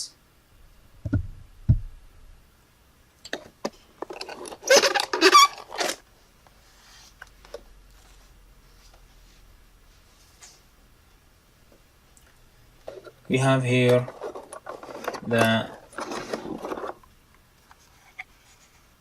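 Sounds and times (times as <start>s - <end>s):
packaging crinkling and rustling: 13.9s - 17.1s.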